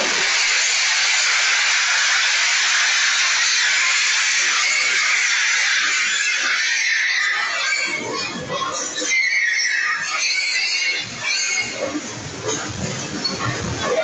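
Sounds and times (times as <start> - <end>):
loud steady hiss: 0.0 - 6.0.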